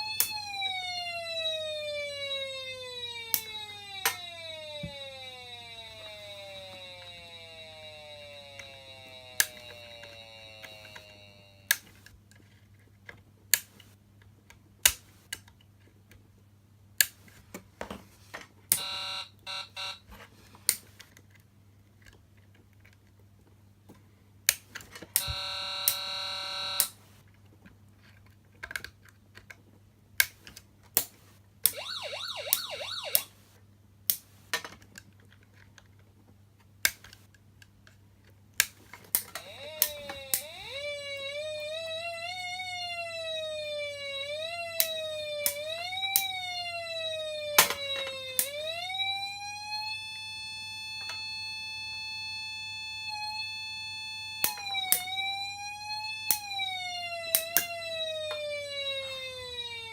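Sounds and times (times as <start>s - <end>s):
falling siren tone: 0.0s - 12.0s, 18.8s - 20.0s, 25.2s - 27.0s, 31.7s - 33.5s, 39.2s - 59.9s
buzzing horn tone: 4.3s - 11.7s, 18.7s - 20.0s, 25.2s - 27.0s
warbling tone: 31.8s - 33.3s.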